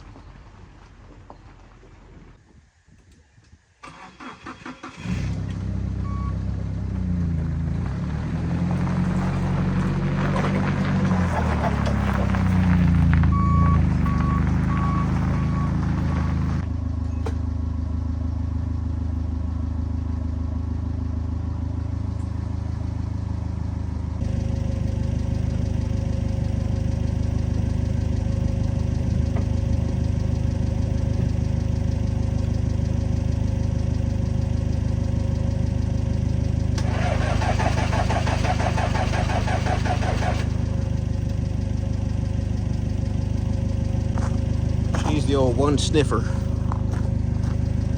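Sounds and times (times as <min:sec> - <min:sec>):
diesel engine idling: 0:03.9 - 0:47.9
short electronic beeps: 0:13.3 - 0:16.5.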